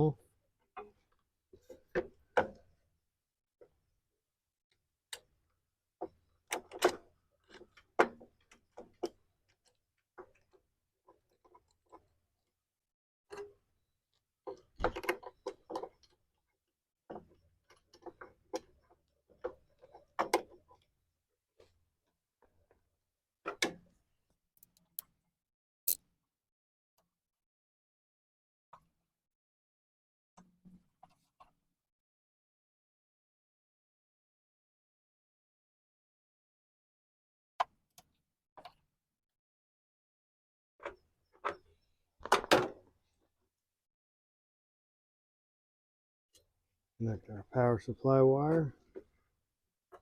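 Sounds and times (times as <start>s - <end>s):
metallic clicks of hand tools: 24.6s - 25.1s.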